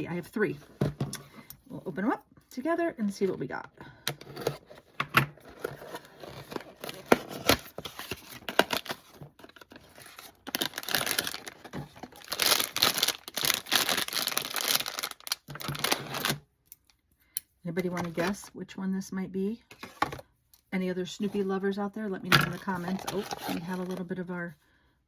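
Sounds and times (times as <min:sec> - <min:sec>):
packaging crinkling: 0:05.4 - 0:16.4
packaging tearing: 0:05.5 - 0:16.4.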